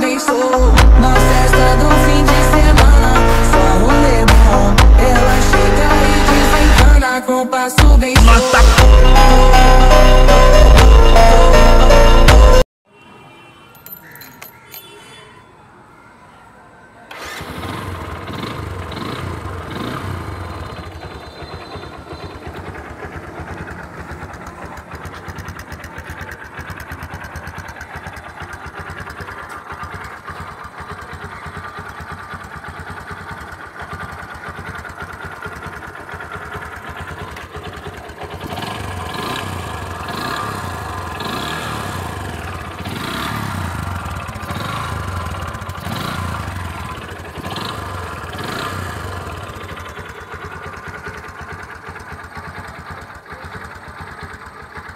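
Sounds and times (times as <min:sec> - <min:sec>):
electric starter: 0:17.1 - 0:18.0
motorcycle engine idling: 0:17.1 - 0:54.9.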